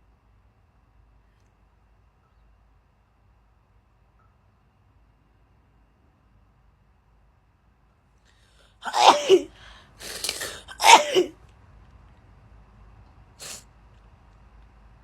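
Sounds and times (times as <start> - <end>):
rush of breath: 8.4 - 11.3
girl sneezing: 8.8 - 11.3.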